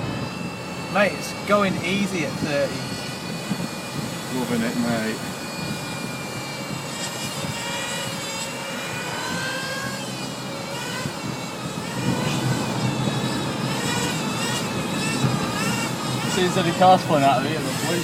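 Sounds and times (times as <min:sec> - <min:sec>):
low road rumble: 0:00.0 - 0:18.0
rc buggy engine whining at high revs: 0:00.0 - 0:18.0.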